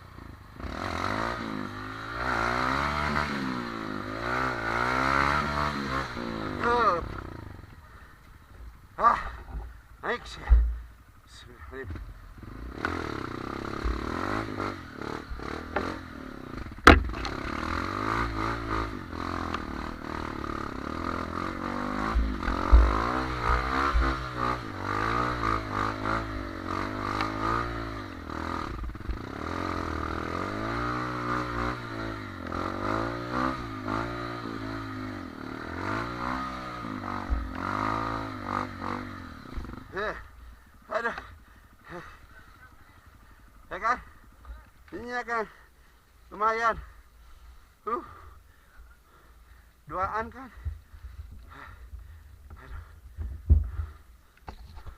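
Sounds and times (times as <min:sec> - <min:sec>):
motorcycle engine revving: 0:00.0 - 0:10.9, 0:11.7 - 0:45.7, 0:47.8 - 0:49.3, 0:49.9 - 0:54.0
clattering knocks: 0:16.8 - 0:17.4.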